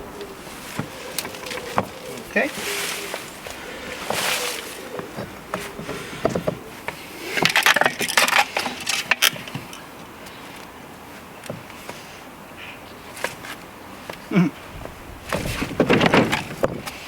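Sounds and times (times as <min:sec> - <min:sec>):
objects clicking and rattling: 0:00.2 - 0:09.9.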